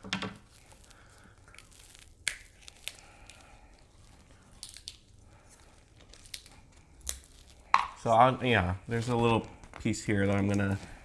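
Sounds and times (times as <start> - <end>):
crab shells cracking: 0.4 - 8.0.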